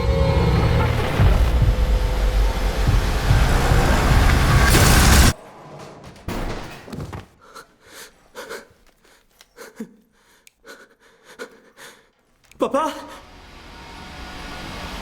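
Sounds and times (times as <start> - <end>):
loud rushing rumble: 0.0 - 5.4.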